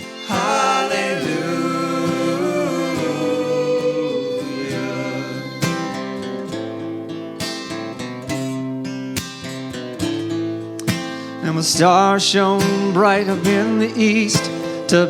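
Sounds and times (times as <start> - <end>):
band playing: 0.0 - 6.0
person singing worship song: 0.0 - 6.1
strummed acoustic guitar: 0.0 - 15.0.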